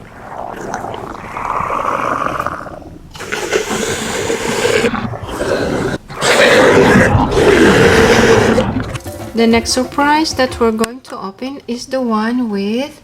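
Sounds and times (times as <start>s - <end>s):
dinosaur roaring: 0.0s - 9.2s.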